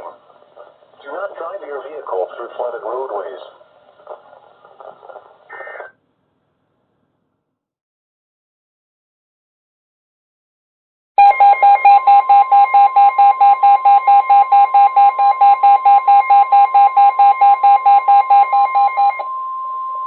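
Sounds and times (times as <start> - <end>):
pulsing alarm beeps: 11.2 - 20.0
steady warning alarm tone: 11.2 - 20.0.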